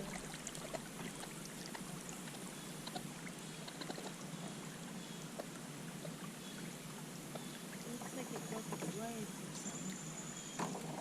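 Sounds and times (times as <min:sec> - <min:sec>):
river water flowing: 0:00.0 - 0:11.0
faint ticks: 0:02.2 - 0:04.6.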